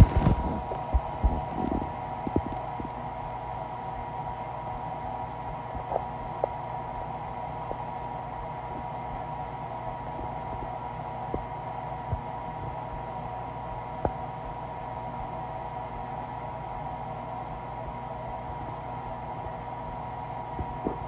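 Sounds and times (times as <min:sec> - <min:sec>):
low hum: 0:00.0 - 0:04.1.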